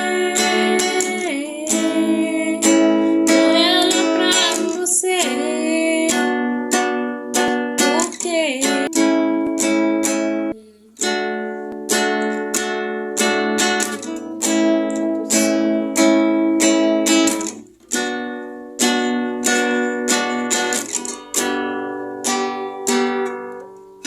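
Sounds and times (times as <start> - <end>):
acoustic guitar strumming chords: 0.0 - 24.0.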